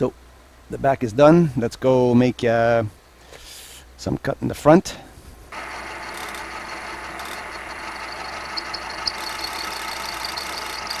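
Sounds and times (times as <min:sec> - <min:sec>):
faint rapid ticking: 0:05.6 - 0:11.0
milling machine running: 0:05.6 - 0:11.0.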